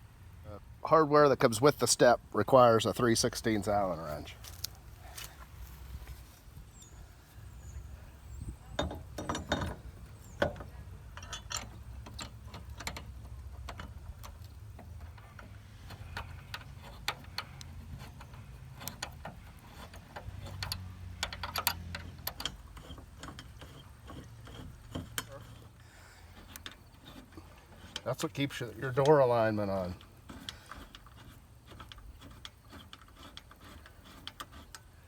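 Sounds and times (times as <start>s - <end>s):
hand tools clicking on metal: 8.7s - 35.0s.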